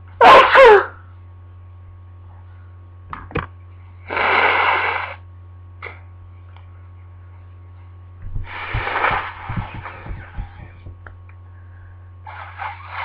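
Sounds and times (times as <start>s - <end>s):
steady low hum: 0.0s - 13.0s
person sneezing: 0.2s - 1.0s
rustling knocks: 8.2s - 11.3s.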